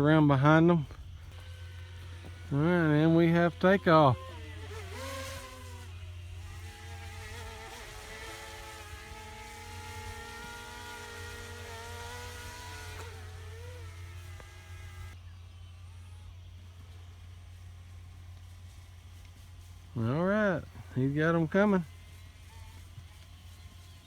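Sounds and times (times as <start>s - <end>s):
drone propellers whining: 0.0s - 18.4s.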